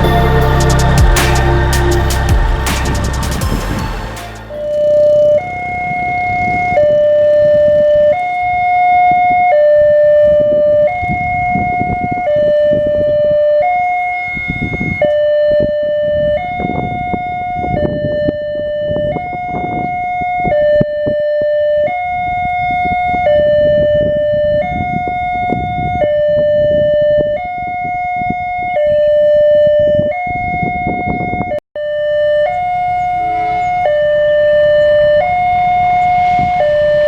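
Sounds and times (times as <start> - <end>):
heavy rumbling: 0.0 - 5.4
two-tone warning siren: 0.0 - 37.0.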